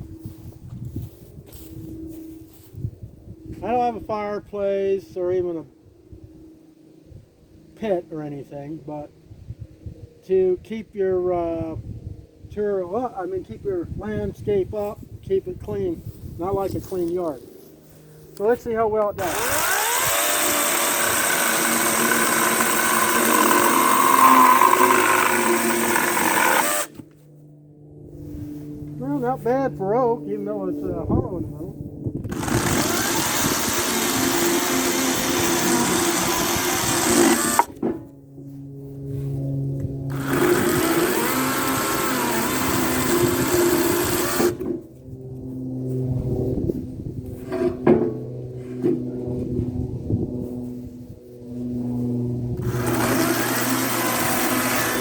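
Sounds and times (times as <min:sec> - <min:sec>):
electric chainsaw motor whining: 0:19.1 - 0:27.0, 0:32.2 - 0:37.8, 0:40.1 - 0:44.7, 0:52.6 - 0:55.0
chainsaw cutting wood: 0:19.2 - 0:27.0, 0:32.3 - 0:37.8, 0:40.1 - 0:44.7, 0:52.6 - 0:55.0.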